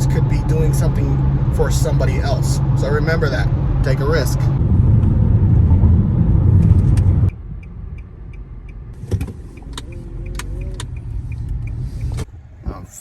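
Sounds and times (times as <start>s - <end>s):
car cabin road noise: 0.0s - 13.0s
light regular ticking: 7.3s - 12.3s.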